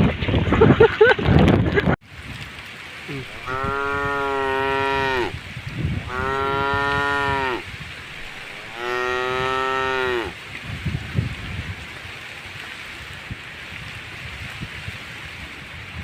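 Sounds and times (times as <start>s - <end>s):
cow mooing: 3.1s - 5.4s, 6.0s - 10.4s.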